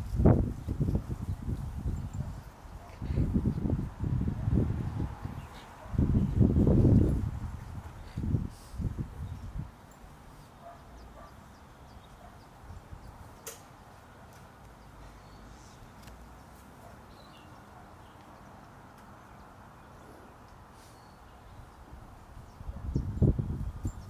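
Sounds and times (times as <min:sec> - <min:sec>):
faint outdoor hiss: 0:00.0 - 0:24.0
sharp click: 0:13.4 - 0:13.7.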